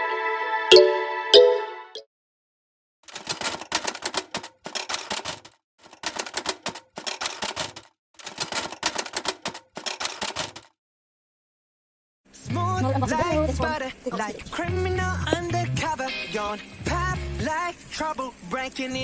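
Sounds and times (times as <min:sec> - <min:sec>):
typewriter keys clacking: 0:03.1 - 0:10.7.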